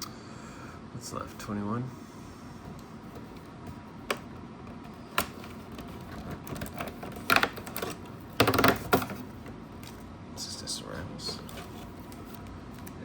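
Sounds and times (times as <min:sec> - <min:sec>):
crackling cardboard and foil rustle: 0:03.0 - 0:10.1, 0:11.2 - 0:13.0.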